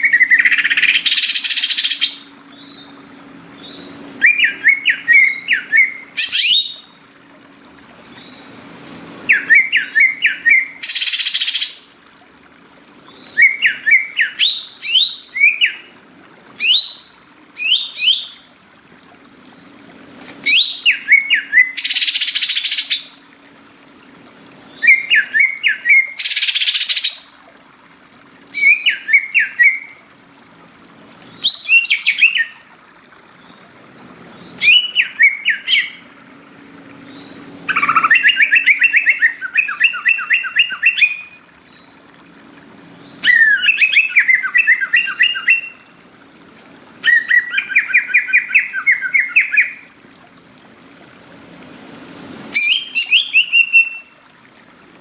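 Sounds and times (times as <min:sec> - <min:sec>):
faint steady hum: 0:00.0 - 0:55.0
bird singing whistled notes: 0:03.6 - 0:06.9, 0:09.3 - 0:11.8, 0:13.2 - 0:15.9, 0:16.6 - 0:18.4, 0:20.4 - 0:23.1, 0:24.7 - 0:27.3, 0:34.6 - 0:36.0, 0:37.1 - 0:41.9, 0:43.2 - 0:45.8, 0:47.0 - 0:49.8, 0:52.5 - 0:54.2
harsh rasping bird calls: 0:31.3 - 0:36.2, 0:37.0 - 0:42.0.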